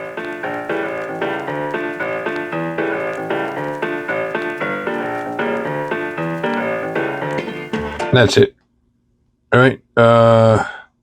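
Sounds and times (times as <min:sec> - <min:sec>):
piano-like keyboard notes: 0:00.0 - 0:08.5.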